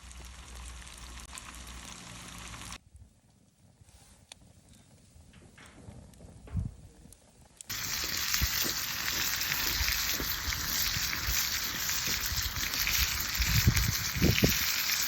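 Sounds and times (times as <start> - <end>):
food sizzling in a pan: 0.0 - 2.8, 7.7 - 15.0.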